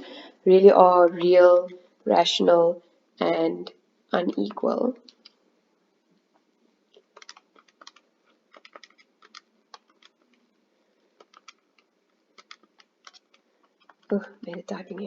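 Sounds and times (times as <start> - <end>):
computer keyboard typing: 7.0 - 10.3, 11.2 - 15.0.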